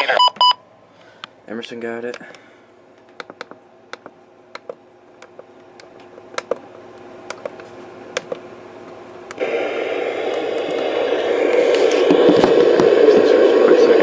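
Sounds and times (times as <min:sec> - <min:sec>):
radio static hiss: 0:09.4 - 0:14.0.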